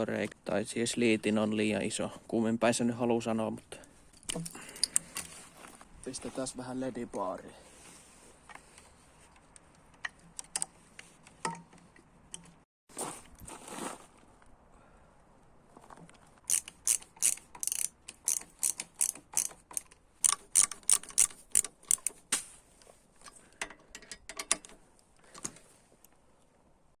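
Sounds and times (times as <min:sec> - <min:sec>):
sharp ratcheting clicks: 0:16.5 - 0:22.2.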